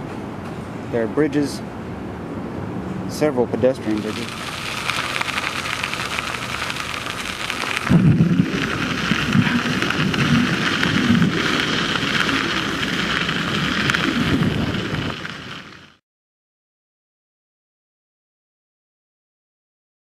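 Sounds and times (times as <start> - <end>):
wind buffeting microphone: 3.9 - 15.8.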